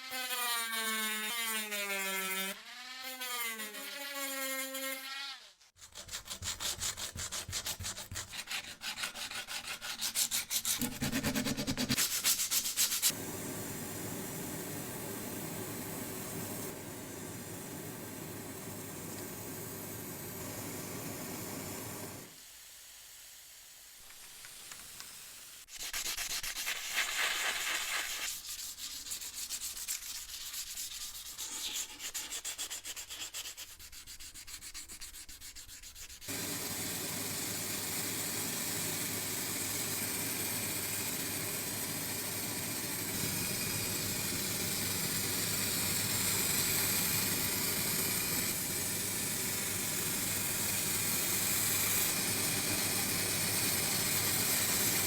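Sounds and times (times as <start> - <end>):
steady hiss: 13.0 - 26.0.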